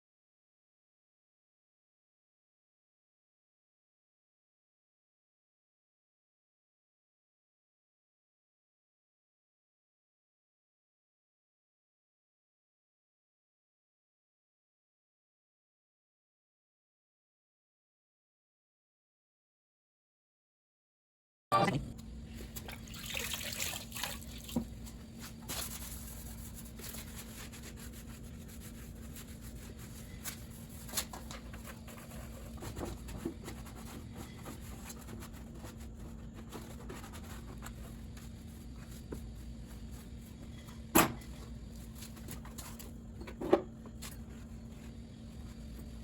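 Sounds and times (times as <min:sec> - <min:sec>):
water running and splashing: 0:22.6 - 0:24.6.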